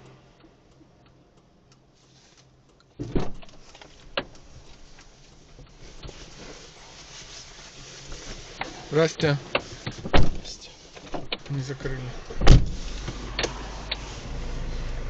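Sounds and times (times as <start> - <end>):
sudden thump: 12.4 - 12.8.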